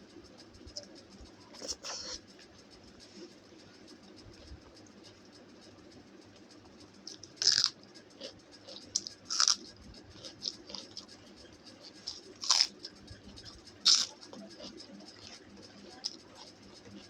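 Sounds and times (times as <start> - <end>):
crunchy food crunches: 7.1 - 11.2, 11.8 - 13.0, 13.8 - 16.5.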